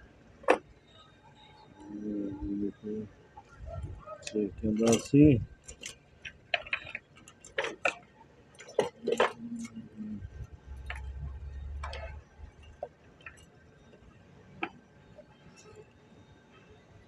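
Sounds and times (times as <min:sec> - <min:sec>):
low steady hum: 0:00.0 - 0:17.0
clicks and knocks of handling: 0:04.2 - 0:09.7.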